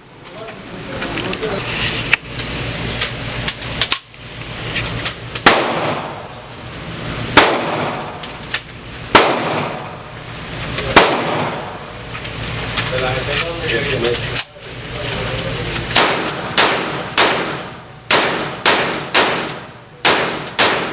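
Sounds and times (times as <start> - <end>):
fainter gunshots and cracks: 5.4 - 6.2, 7.3 - 8.4, 9.1 - 9.9, 10.9 - 11.7, 15.9 - 20.9
gunshots with echo: 5.4 - 6.2, 7.3 - 8.2, 9.1 - 10.0, 10.9 - 11.8, 16.0 - 20.9.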